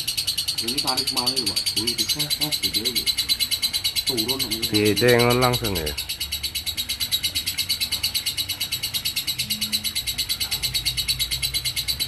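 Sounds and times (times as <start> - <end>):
lovebird chattering trill: 0.0 - 12.0.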